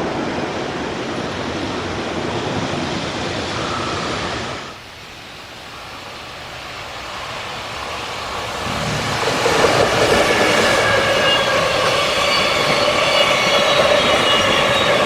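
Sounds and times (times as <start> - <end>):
approaching freight train: 0.0 - 15.0
steady rushing noise: 0.0 - 15.0.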